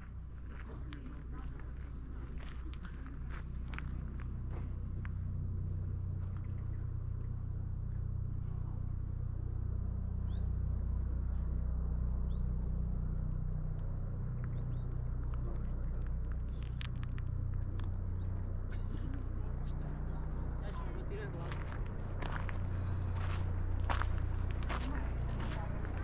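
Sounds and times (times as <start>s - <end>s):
steady low rumble: 0.0s - 26.0s
bird chirps: 24.2s - 24.6s.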